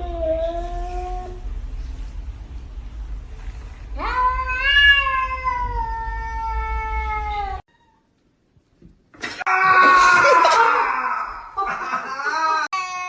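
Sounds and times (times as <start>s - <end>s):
cat yowling: 4.0s - 8.1s.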